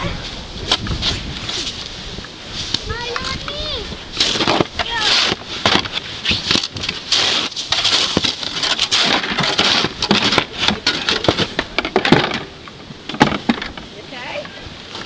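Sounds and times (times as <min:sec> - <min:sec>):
snow scraped and crunched: 0:00.0 - 0:02.9, 0:03.9 - 0:11.5.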